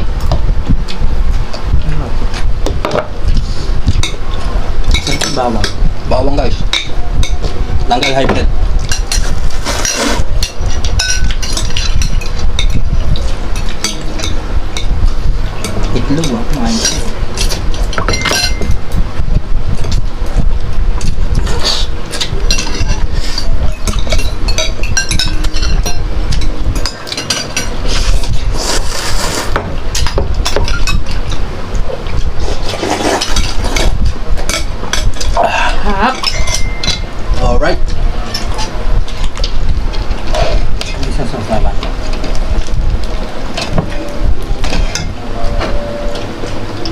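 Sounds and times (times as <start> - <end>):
steady low rumble: 0.0 - 46.9
utensils clinking on dishes: 4.8 - 5.8, 6.4 - 14.9, 15.6 - 18.8, 21.5 - 28.4, 29.9 - 31.4, 32.6 - 37.1.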